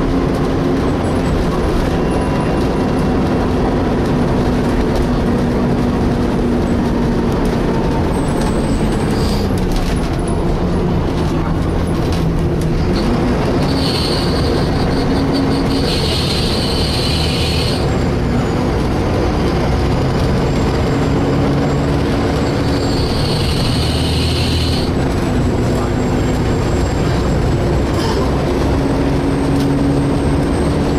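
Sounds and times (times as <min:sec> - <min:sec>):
bus engine droning: 0:00.0 - 0:30.9
high-pitched screech: 0:13.6 - 0:17.9, 0:22.5 - 0:24.9.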